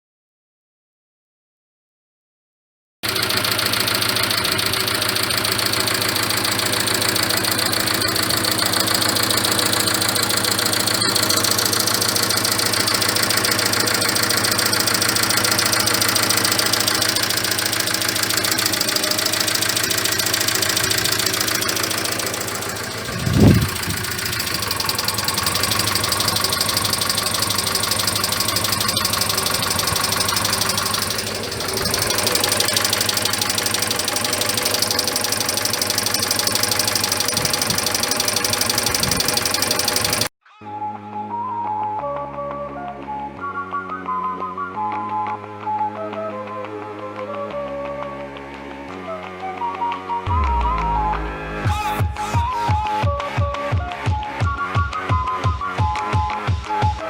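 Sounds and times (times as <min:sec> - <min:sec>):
car engine idling with knocking: 0:03.0 - 0:40.3.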